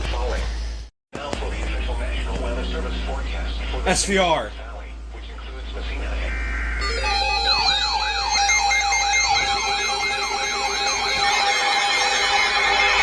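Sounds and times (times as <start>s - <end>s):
electronic siren yelping: 6.2s - 13.0s.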